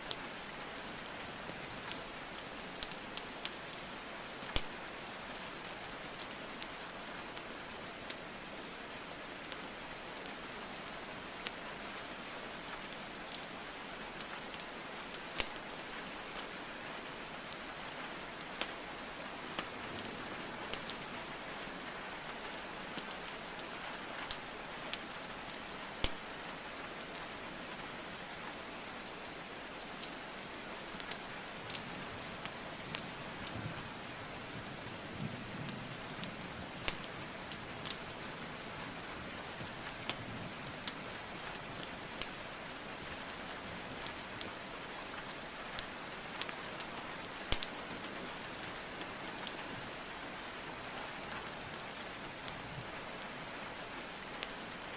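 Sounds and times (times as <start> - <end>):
burning logs crackling: 20.7 - 21.4, 22.2 - 27.4, 30.8 - 34.0, 35.7 - 49.5.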